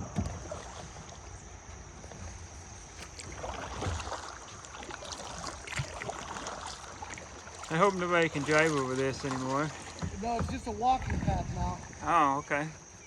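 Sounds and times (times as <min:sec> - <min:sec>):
paddle strokes splashing water: 0:00.0 - 0:13.0
water noise: 0:00.0 - 0:13.0
wind noise: 0:10.0 - 0:12.1.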